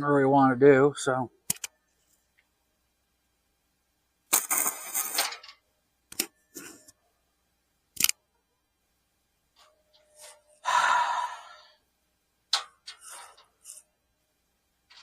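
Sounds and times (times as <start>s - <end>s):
sharp metal clicks: 1.5s - 1.7s, 8.0s - 8.2s.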